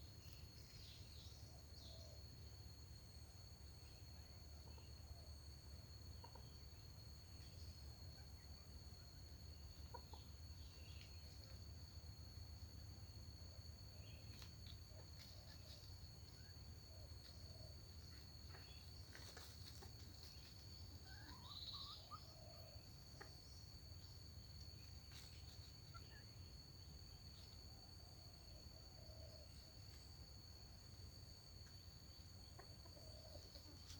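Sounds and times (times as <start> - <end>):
insect drone: 0.0 - 33.9
bird calls: 18.5 - 24.2.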